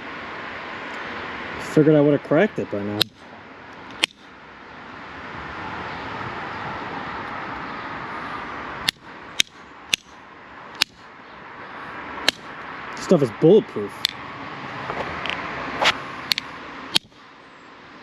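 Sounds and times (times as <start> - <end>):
pliers striking copper pipe: 10.8 - 11.0.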